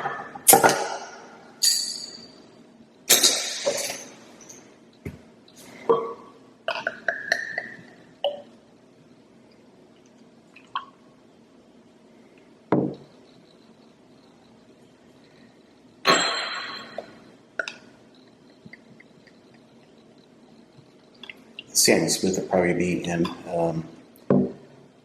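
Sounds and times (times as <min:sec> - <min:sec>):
glasses and bottles clinking: 0:00.0 - 0:02.4, 0:03.1 - 0:04.7, 0:16.1 - 0:17.8.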